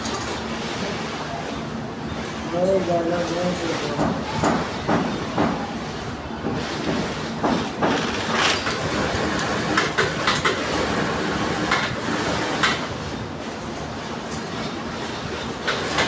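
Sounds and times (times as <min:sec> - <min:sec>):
sewing machine clattering: 0:06.5 - 0:12.9.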